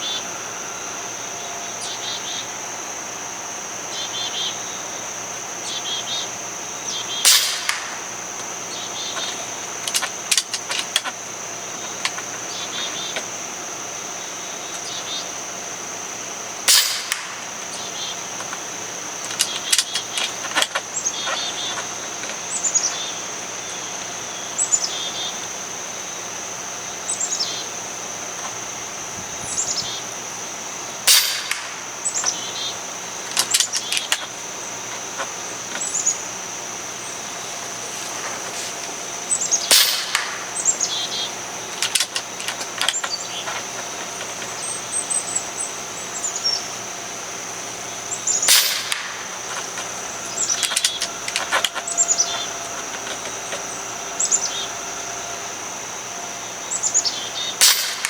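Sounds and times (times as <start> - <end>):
birds chirping: 3.9 - 25.6, 28.4 - 58.0
air rifle shots: 7.2 - 8.9, 16.7 - 18.3, 31.0 - 32.7, 39.6 - 42.8, 48.3 - 53.2, 57.6 - 58.0.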